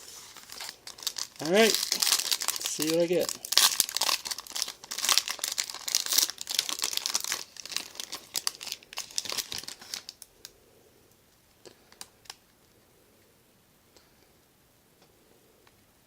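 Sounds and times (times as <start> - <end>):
card wrapper tearing and crinkling: 0.0 - 10.3.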